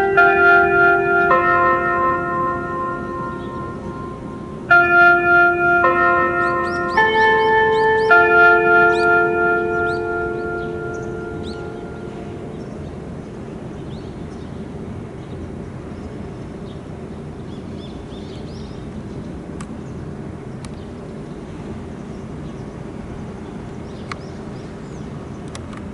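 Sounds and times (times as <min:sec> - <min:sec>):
loudspeaker chime ringing: 0:00.0 - 0:12.9
faint hum: 0:00.0 - 0:16.2.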